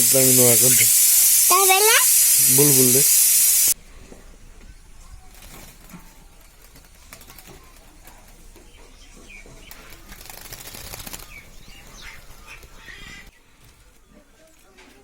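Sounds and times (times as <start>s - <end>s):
bird wings fluttering: 5.3s - 8.4s, 9.7s - 13.3s.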